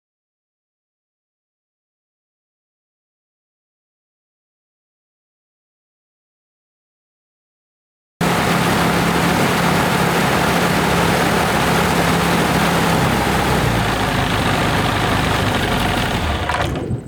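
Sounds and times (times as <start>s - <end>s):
piston aircraft engine running: 8.2s - 17.0s.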